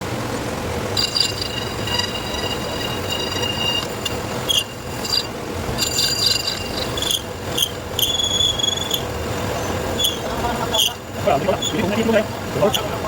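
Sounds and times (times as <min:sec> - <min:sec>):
lathe motor hum: 0:00.4 - 0:13.0
lathe cutting tool squealing: 0:01.0 - 0:13.0.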